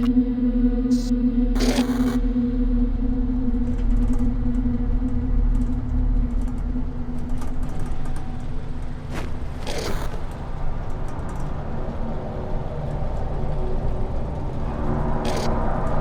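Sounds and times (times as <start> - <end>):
deep droning rumble: 0.0 - 16.0.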